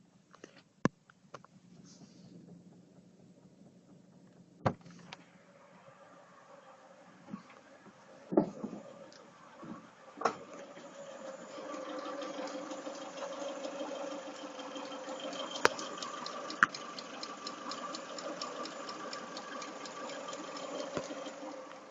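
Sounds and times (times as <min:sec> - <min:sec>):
car engine idling with knocking: 0:11.8 - 0:21.7.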